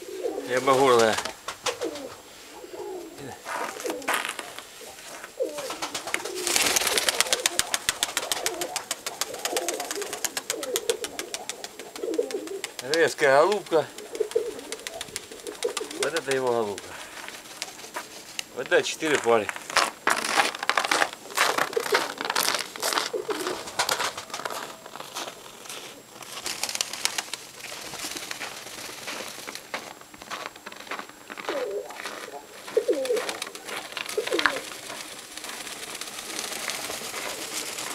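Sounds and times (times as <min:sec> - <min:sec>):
pigeons cooing: 0:00.0 - 0:19.2, 0:20.9 - 0:29.8, 0:31.0 - 0:37.9
crackling rustle: 0:00.0 - 0:37.9
fast sharp clicks: 0:05.6 - 0:18.8, 0:26.3 - 0:30.4.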